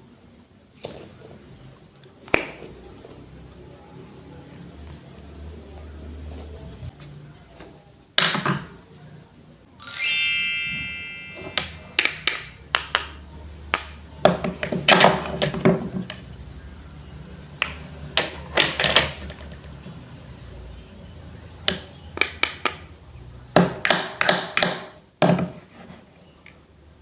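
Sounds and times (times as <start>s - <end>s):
bright ringing ping: 9.8s - 12.0s.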